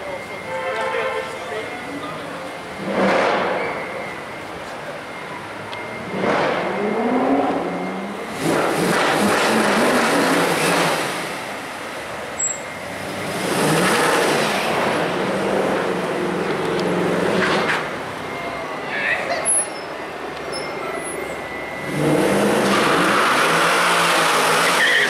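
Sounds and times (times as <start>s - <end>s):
car engines revving and accelerating: 2.6s - 4.3s, 5.7s - 18.3s, 21.0s - 25.0s.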